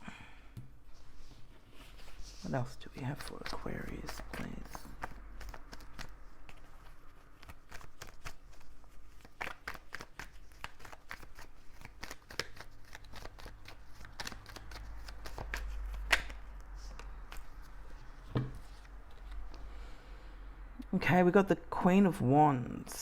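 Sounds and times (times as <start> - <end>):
tarot cards being shuffled: 1.8 - 19.7.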